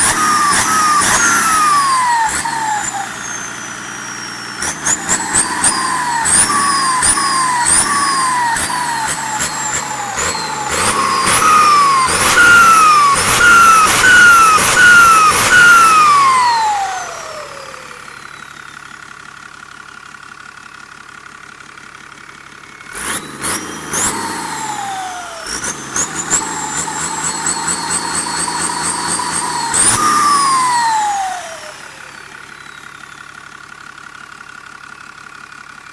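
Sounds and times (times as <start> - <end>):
turbo whistle: 0.0 - 17.3, 25.4 - 31.6
diesel engine revving: 0.0 - 18.8, 22.4 - 33.5.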